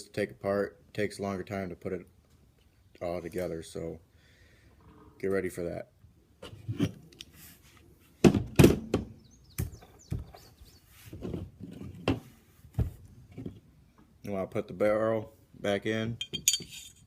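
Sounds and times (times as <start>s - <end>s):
metal gun parts clunking and clicking: 16.2s - 17.0s.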